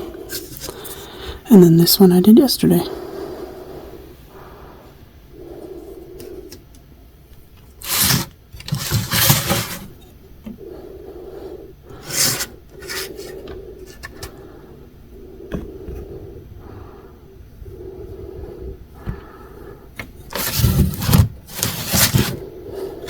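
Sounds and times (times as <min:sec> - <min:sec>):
plastic models rubbing and scraping: 0:00.0 - 0:01.1, 0:07.6 - 0:10.2, 0:11.9 - 0:14.4, 0:20.0 - 0:23.0.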